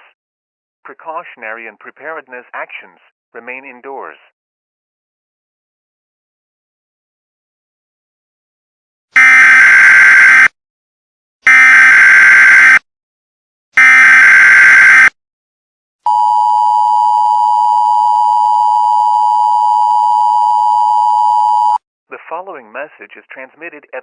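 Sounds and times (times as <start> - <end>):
two-tone attention signal: 16.1 - 21.8.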